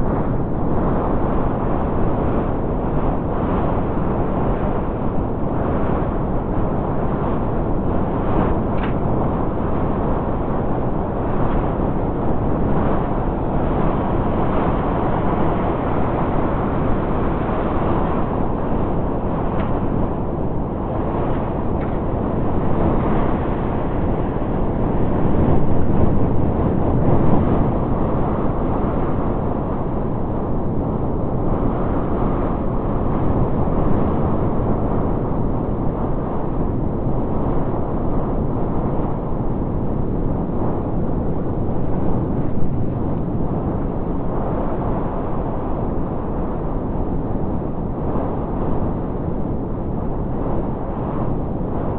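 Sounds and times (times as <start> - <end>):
blizzard wind roaring: 0.0 - 51.9.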